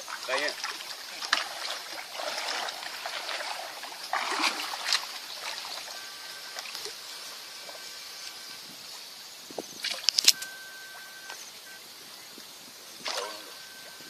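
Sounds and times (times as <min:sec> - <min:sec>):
sharp water splash: 0:00.0 - 0:07.0, 0:09.8 - 0:11.1, 0:13.0 - 0:13.9
water splashing and sloshing: 0:00.0 - 0:11.7, 0:12.9 - 0:14.0.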